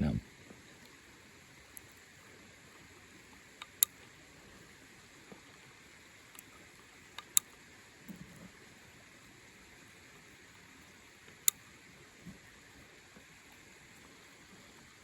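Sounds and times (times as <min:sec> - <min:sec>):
steady faint hiss: 0:00.0 - 0:15.0
faint ticks: 0:01.6 - 0:08.6, 0:10.1 - 0:15.0
revolver cylinder metallic clicks: 0:03.6 - 0:04.0, 0:06.3 - 0:07.6.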